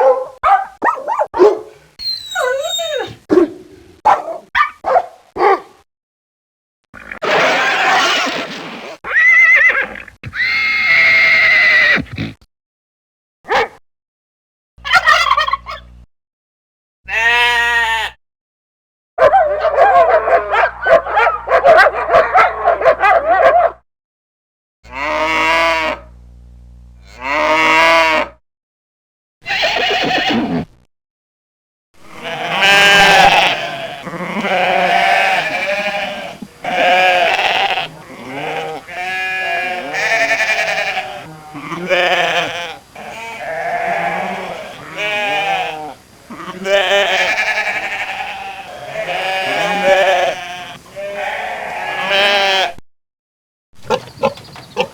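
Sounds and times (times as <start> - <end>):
fast-wavering animal call: 2.0 - 3.2
sheep bleating: 17.1 - 18.2, 24.9 - 26.0, 27.0 - 28.3, 29.4 - 30.6, 32.0 - 52.8.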